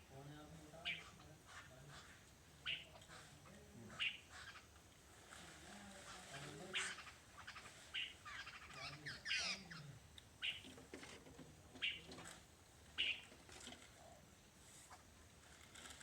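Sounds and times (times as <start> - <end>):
birds calling harsh notes: 0.8 - 10.8, 11.8 - 13.7.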